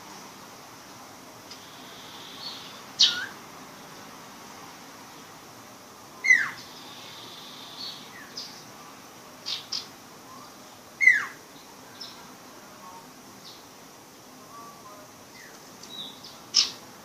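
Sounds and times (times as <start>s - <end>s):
young songbird calling: 1.5s - 3.4s, 6.2s - 8.7s, 9.4s - 11.4s, 15.3s - 16.8s.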